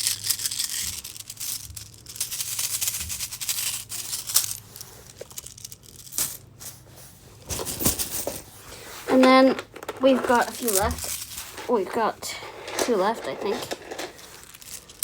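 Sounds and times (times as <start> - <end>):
metal beads clicking: 0.0 - 6.4, 12.7 - 15.0.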